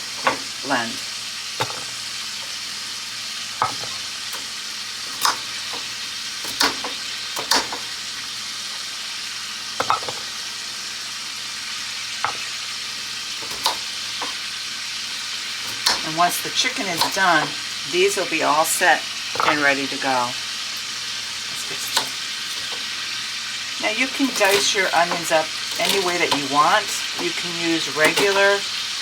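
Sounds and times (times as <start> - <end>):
chicken sizzling in a pan: 0.0 - 29.0
sharp clicks in pan: 5.1 - 7.9, 13.4 - 14.4, 15.6 - 16.1, 17.0 - 17.6.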